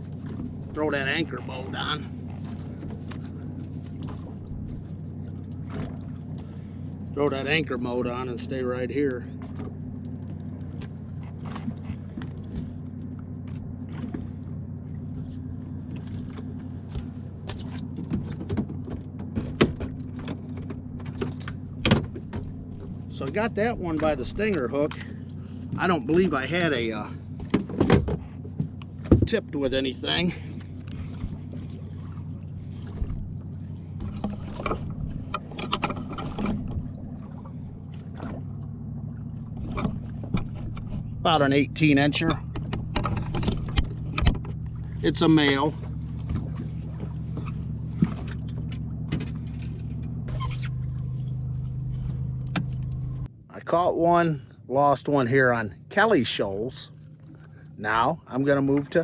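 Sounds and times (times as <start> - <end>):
boat motor humming: 0.0 - 59.0
gear knocking and clattering: 33.0 - 53.3
clicks and knocks: 42.2 - 44.8.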